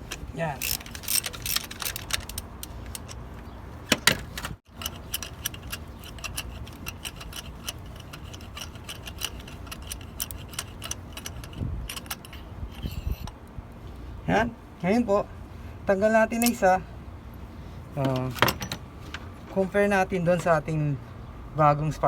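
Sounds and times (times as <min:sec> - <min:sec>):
hand ratchet clicking: 0:00.0 - 0:03.2, 0:04.7 - 0:13.4.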